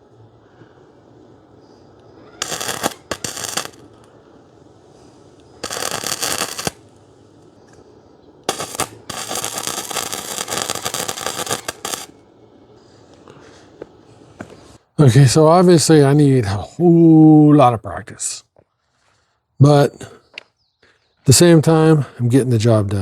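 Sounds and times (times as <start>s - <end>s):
welder arc crackling: 0.0s - 14.8s.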